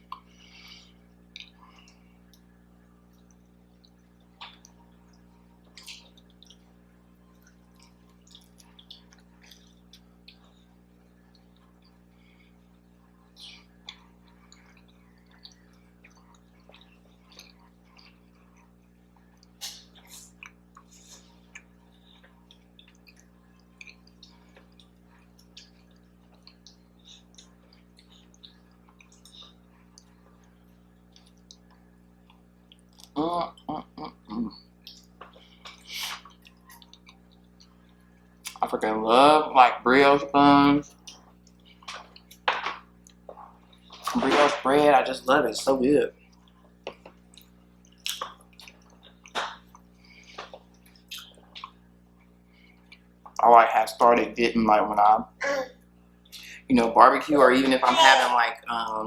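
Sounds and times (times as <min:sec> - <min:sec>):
low steady hum: 0:00.0 - 0:59.0
wet chewing and mouth smacks: 0:01.1 - 0:02.5, 0:03.1 - 0:06.7, 0:07.3 - 0:12.0, 0:13.3 - 0:33.2, 0:34.8 - 0:38.6, 0:40.9 - 0:44.2, 0:46.2 - 0:53.4.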